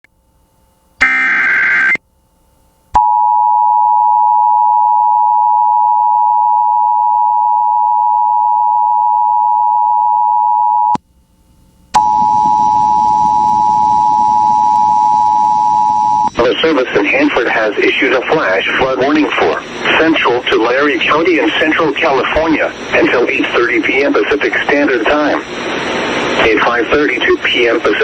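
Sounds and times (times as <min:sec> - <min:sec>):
radio hiss: 0:11.9 - 0:28.0
two-tone attention signal: 0:12.0 - 0:16.5.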